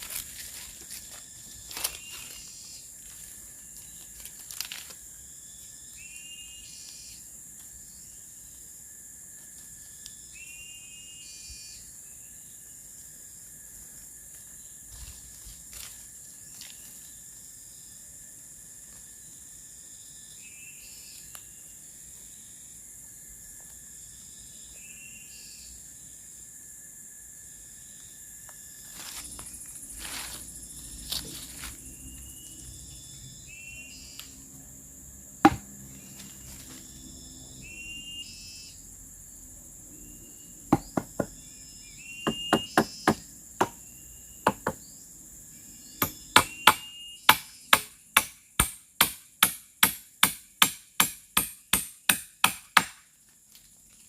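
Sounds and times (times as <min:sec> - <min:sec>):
insects shrilling: 0:00.0 - 0:52.9
bird chirping: 0:05.2 - 0:08.6, 0:10.0 - 0:12.8, 0:30.8 - 0:34.5, 0:35.6 - 0:38.9, 0:39.9 - 0:47.9
tool striking bamboo: 0:35.4 - 0:35.7, 0:40.7 - 0:41.3, 0:42.3 - 0:43.8, 0:44.5 - 0:44.8, 0:46.0 - 0:53.1.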